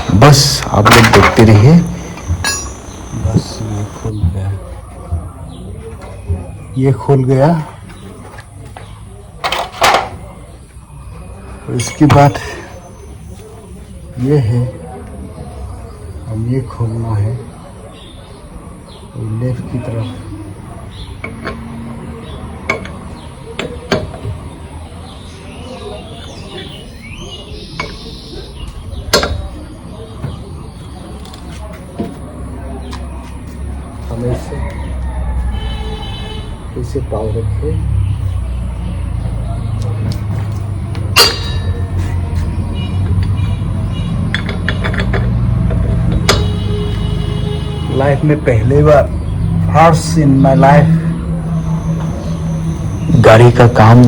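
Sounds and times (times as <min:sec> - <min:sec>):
metal tools clinking: 0:00.0 - 0:04.1, 0:41.1 - 0:42.2, 0:44.3 - 0:46.6
ringing metal clank: 0:00.0 - 0:04.1, 0:41.0 - 0:47.9.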